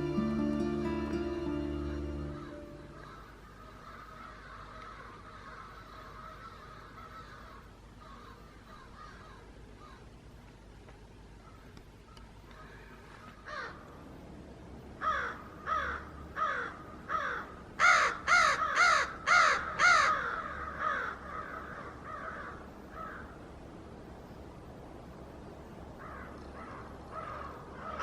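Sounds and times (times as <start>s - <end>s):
crow cawing: 1.9s - 10.1s, 12.5s - 13.8s, 15.0s - 23.4s, 26.0s - 28.0s.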